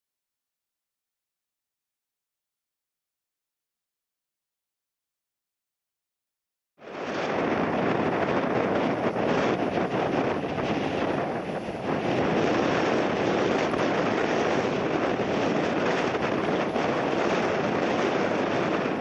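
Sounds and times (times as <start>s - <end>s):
jet engines rushing: 6.8s - 19.0s
wind buffeting microphone: 6.8s - 19.0s.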